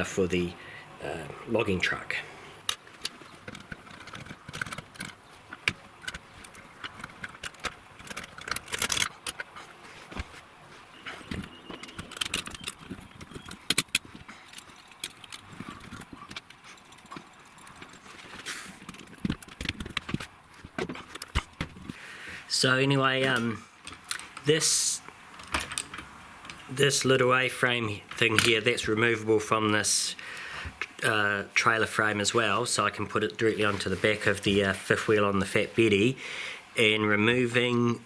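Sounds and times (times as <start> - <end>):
metal parts clicking and rattling: 2.7 - 9.7, 11.0 - 21.9, 25.4 - 26.6.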